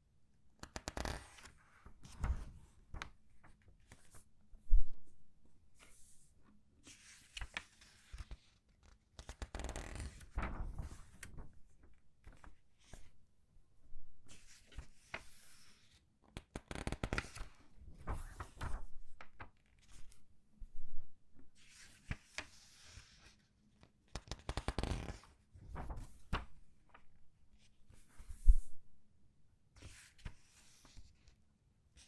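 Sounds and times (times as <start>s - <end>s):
pages turning: 6.9s - 13.1s, 16.6s - 20.2s, 24.2s - 27.0s, 29.8s - 31.2s.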